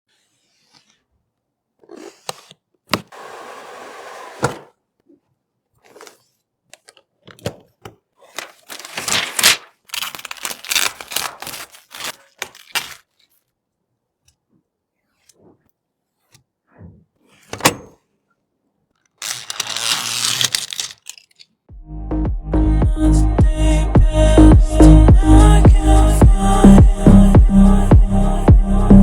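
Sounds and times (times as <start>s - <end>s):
tearing or peeling noise: 8.2s - 13.4s, 19.2s - 21.5s.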